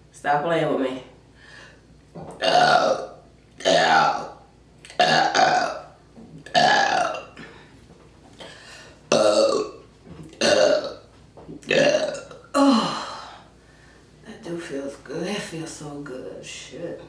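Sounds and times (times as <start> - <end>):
person burping: 2.2 - 7.6, 9.1 - 9.8, 10.4 - 11.0, 11.6 - 13.4.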